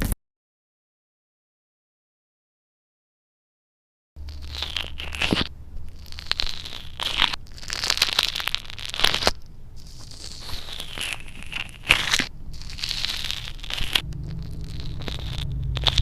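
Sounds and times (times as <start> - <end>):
slime squished by hand: 4.2 - 16.0.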